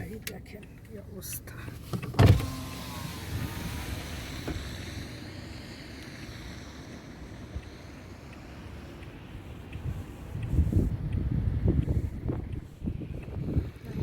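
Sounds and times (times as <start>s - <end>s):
traffic on snowy roads: 0.0s - 14.0s
wind rushing: 9.7s - 14.0s.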